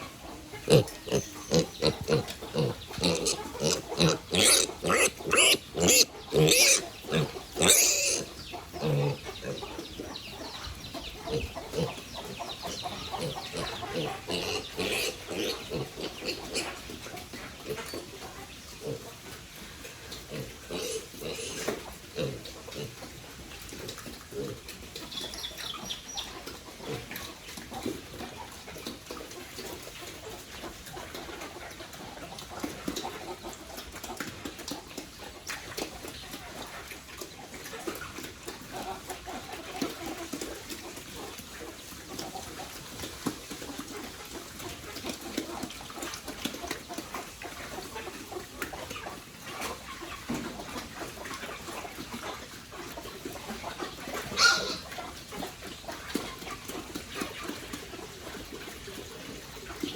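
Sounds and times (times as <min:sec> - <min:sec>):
fowl clucking: 0:00.0 - 0:16.9, 0:53.5 - 0:55.5.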